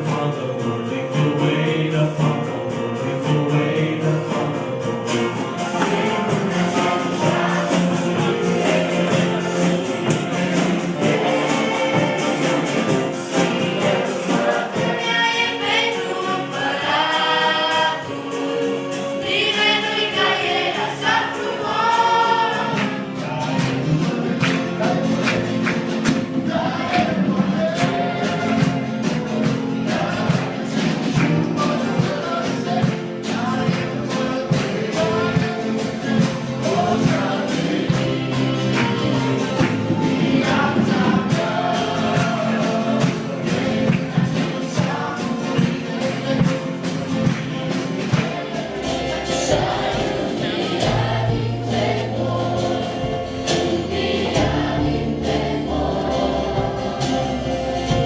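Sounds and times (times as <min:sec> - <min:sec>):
group singing worship song: 0:00.0 - 0:58.0
instrumental accompaniment with beat: 0:00.0 - 0:58.0.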